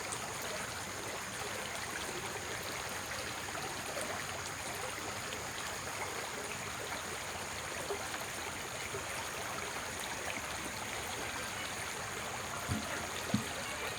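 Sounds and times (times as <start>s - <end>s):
flowing stream rushing: 9.8s - 13.9s.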